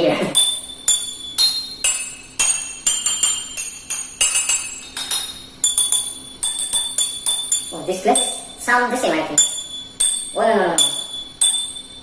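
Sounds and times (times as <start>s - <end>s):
water glasses struck ringing: 0.3s - 8.6s, 9.3s - 12.0s.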